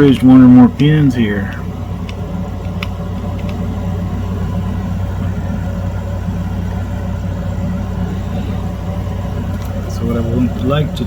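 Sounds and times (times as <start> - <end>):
steady low hum: 0.0 - 11.0
faint clicks: 1.5 - 3.6.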